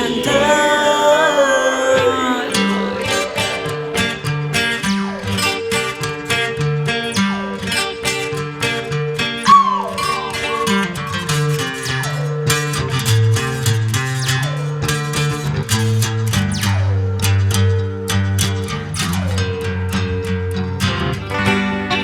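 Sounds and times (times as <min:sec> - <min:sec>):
guitar chords plucked and strummed: 0:00.0 - 0:22.0
bending lead guitar note: 0:02.0 - 0:13.6, 0:16.5 - 0:22.0
bass line: 0:15.4 - 0:22.0.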